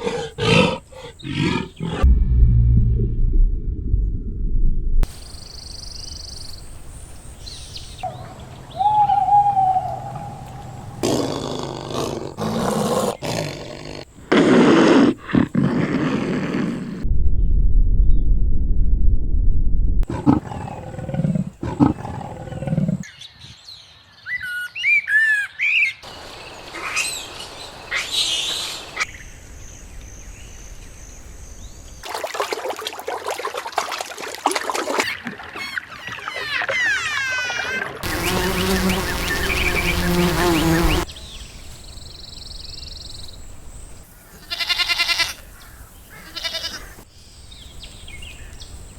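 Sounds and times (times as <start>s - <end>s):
bird chirps: 5.2s - 11.0s
animal calls: 8.0s - 13.6s.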